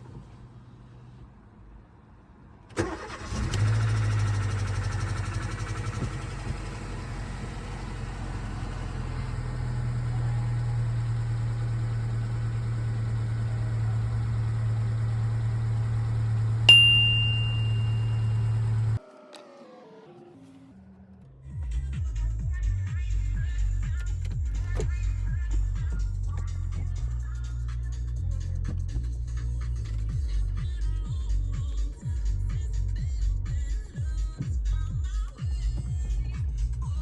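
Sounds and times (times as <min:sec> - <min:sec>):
car engine starting and idling: 0:00.0 - 0:37.0
sharp metallic ping: 0:16.7 - 0:18.9.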